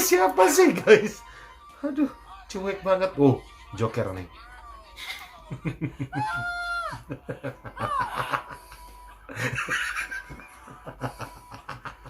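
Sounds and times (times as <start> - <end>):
people laughing: 5.0 - 12.0.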